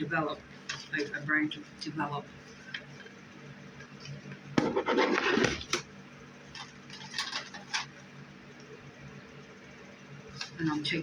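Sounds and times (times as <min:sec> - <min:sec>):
plastic objects rustling clatter: 0:06.5 - 0:07.9.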